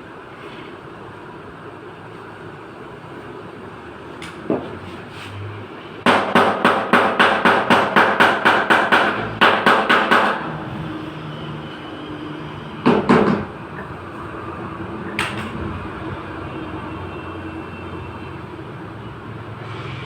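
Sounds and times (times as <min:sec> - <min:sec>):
hammer beating sheet metal: 0:06.0 - 0:10.6, 0:12.9 - 0:13.5.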